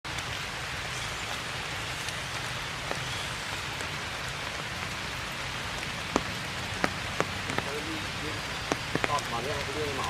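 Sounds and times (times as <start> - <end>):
steady rain falling: 0.0 - 10.0
drops ticking against surfaces: 6.1 - 7.8, 8.6 - 10.0.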